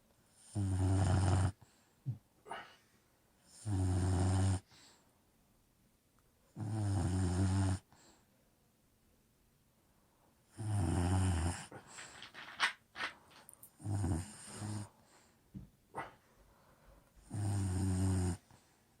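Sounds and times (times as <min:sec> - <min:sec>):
dog snoring: 0:00.3 - 0:01.6, 0:03.5 - 0:04.7, 0:06.6 - 0:07.9, 0:10.5 - 0:11.9, 0:13.8 - 0:15.0, 0:17.2 - 0:18.5.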